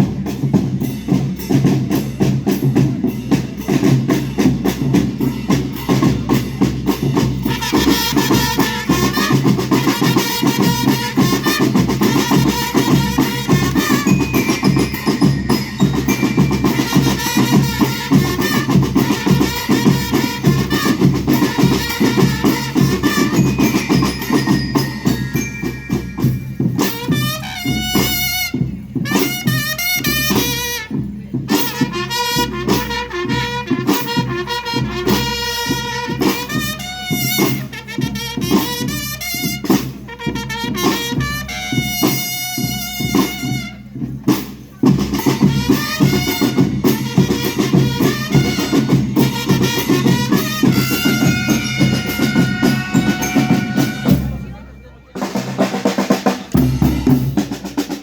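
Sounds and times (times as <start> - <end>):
snare and bass drums: 0.0 - 58.0
melody instruments: 7.4 - 29.6, 46.0 - 57.5.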